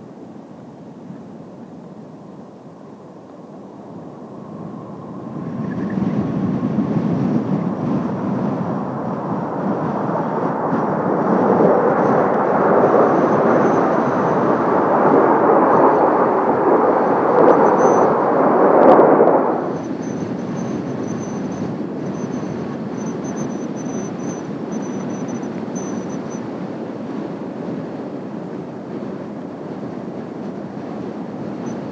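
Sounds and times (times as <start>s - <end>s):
jet engines rushing: 0.1s - 31.9s.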